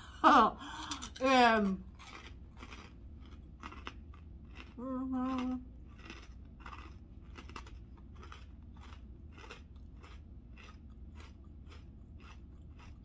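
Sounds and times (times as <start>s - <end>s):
person chewing food: 0.1s - 13.0s.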